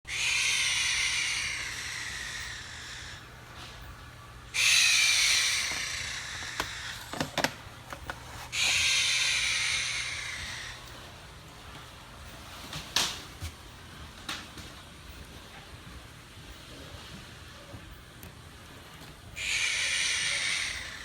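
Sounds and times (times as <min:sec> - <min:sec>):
loud bursts of hissing: 0:00.1 - 0:03.2, 0:04.6 - 0:06.9, 0:19.4 - 0:21.0.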